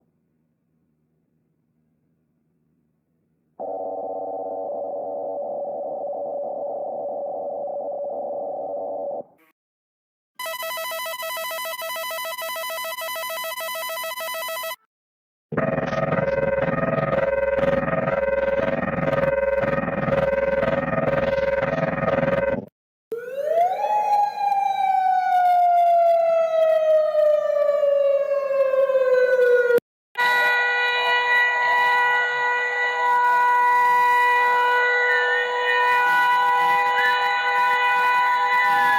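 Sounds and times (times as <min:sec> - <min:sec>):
harsh multi-tone alarm: 0:03.6 - 0:09.2, 0:10.4 - 0:14.9, 0:15.6 - 0:38.9
buzzy electronic alert tone: 0:15.6 - 0:22.7
siren-like sweeping tone: 0:15.6 - 0:38.9.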